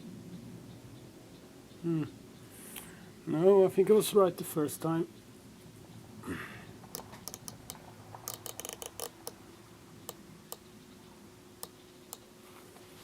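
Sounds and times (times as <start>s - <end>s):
scope turret clicks: 6.9s - 9.4s.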